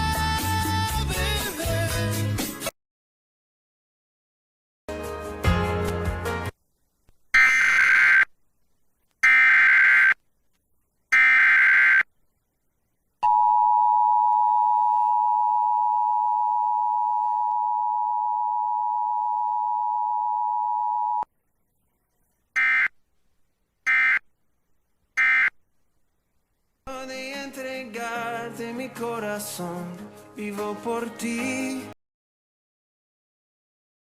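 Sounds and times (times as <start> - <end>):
data bursts: 7.4 - 8.3.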